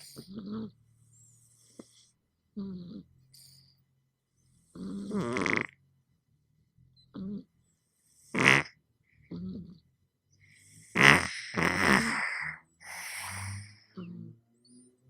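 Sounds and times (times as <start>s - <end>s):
cat snoring: 0.0s - 3.7s, 4.6s - 5.8s, 7.1s - 9.8s, 10.5s - 14.5s.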